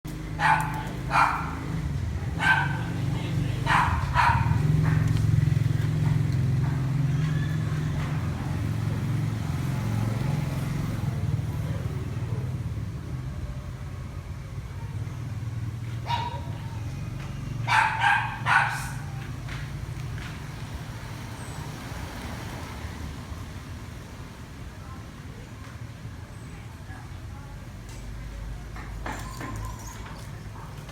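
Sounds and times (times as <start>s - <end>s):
dog barking: 0.4s - 8.3s, 16.0s - 16.8s, 17.6s - 19.3s.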